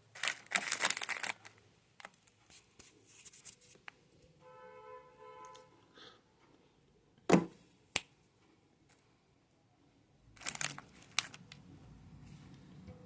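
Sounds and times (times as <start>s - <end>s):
plastic wrapper crinkling: 0.0s - 4.0s, 10.4s - 11.6s.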